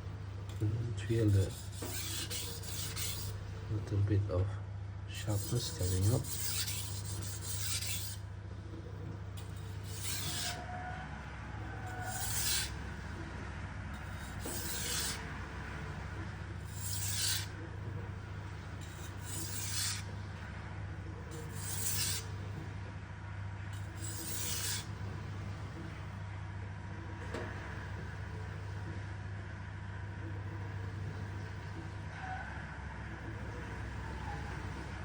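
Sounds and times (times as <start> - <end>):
steady low hum: 0.0 - 35.0
knife scraping on whetstone: 1.1 - 3.4, 5.2 - 8.2, 9.4 - 10.7, 11.8 - 12.9, 14.0 - 15.3, 16.6 - 17.6, 18.8 - 20.2, 21.3 - 22.3, 23.8 - 25.0.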